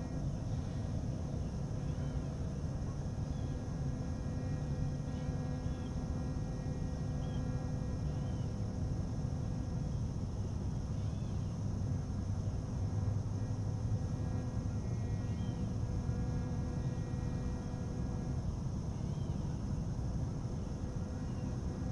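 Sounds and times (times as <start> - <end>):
faint steady tones: 0.0 - 21.9
steady low hum: 0.0 - 21.9.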